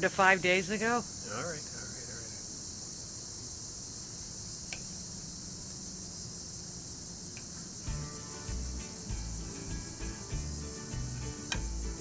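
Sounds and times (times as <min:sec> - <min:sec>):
crickets chirping: 0:00.0 - 0:12.0
music with bass line: 0:07.9 - 0:12.0.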